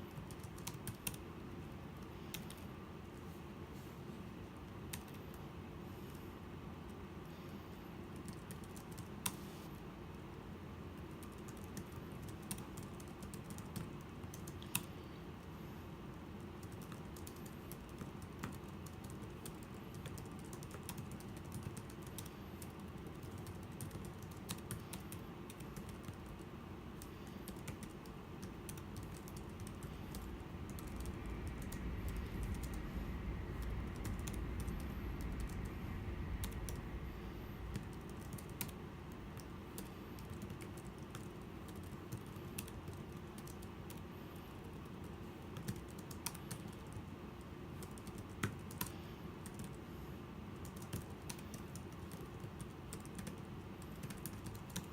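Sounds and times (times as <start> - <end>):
steady low rumble: 27.1 - 41.2.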